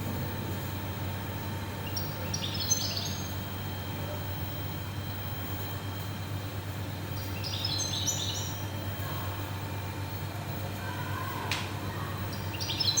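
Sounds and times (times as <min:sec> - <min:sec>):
low hum and hiss: 0:00.0 - 0:13.0.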